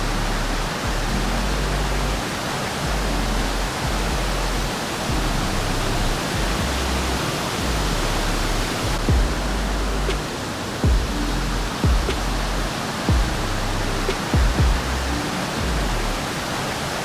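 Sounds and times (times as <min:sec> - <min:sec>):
low bass background music: 0:00.0 - 0:16.4
waterfall rushing: 0:00.2 - 0:17.0
low thump: 0:09.1 - 0:09.4.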